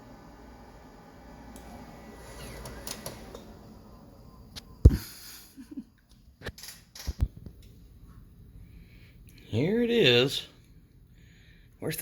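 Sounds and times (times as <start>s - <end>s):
computer humming: 0.0s - 4.9s
floppy drive ejecting disk: 1.6s - 3.6s.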